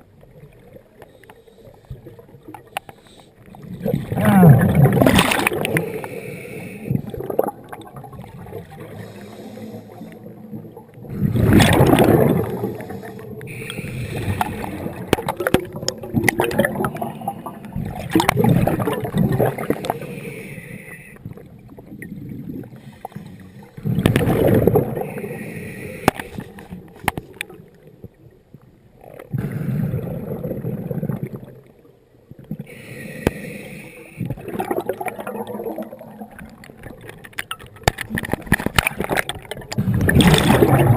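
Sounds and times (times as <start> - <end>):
regulator inhale hiss: 1.0 - 2.0, 2.8 - 3.5, 5.7 - 7.1, 8.8 - 10.4, 12.6 - 15.0, 19.6 - 21.2, 22.8 - 23.9, 25.0 - 26.6, 32.7 - 34.4
gurgling exhaled bubbles: 3.4 - 20.6, 21.2 - 27.7, 29.0 - 31.7, 34.2 - 40.9.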